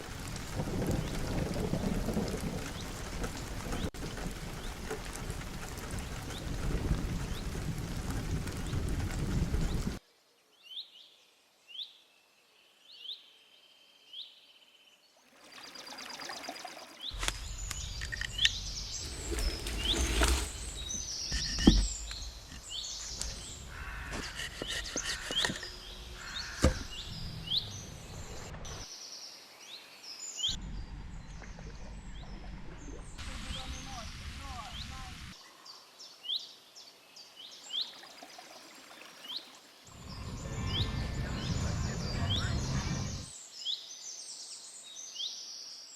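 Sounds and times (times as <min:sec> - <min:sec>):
faint outdoor hiss: 0:10.0 - 0:31.5
birds chirping: 0:15.5 - 0:43.3.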